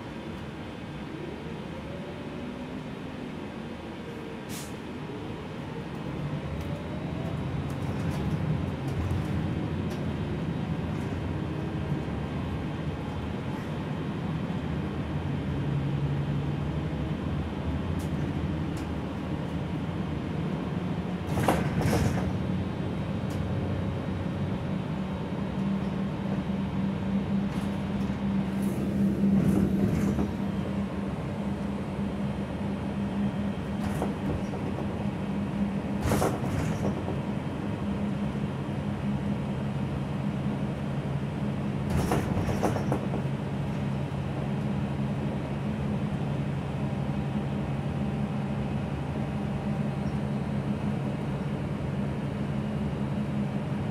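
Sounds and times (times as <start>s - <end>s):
bus engine drone: 0.0s - 53.9s
bus body rattles and knocks: 7.6s - 14.5s, 17.6s - 24.6s, 25.6s - 38.4s, 41.6s - 44.6s.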